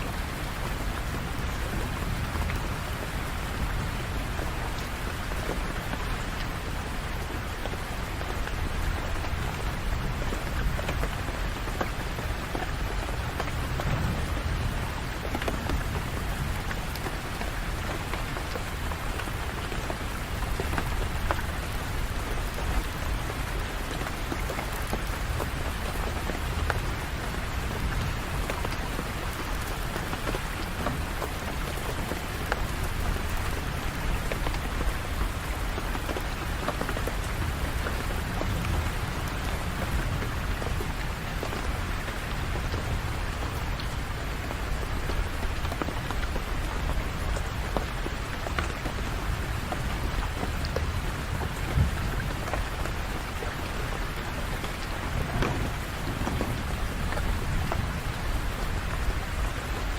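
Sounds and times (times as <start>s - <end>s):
heavy rain: 0.0s - 59.9s.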